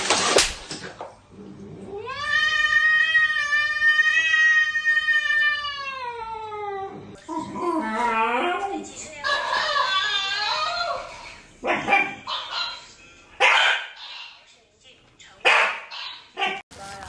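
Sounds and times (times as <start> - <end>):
pet yowling: 2.0 - 12.8.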